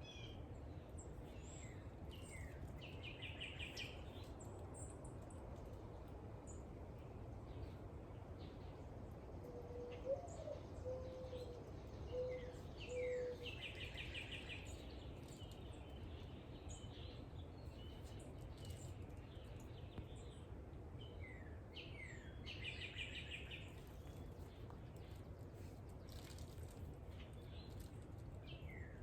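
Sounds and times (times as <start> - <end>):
bird cooing: 12.1 - 13.4.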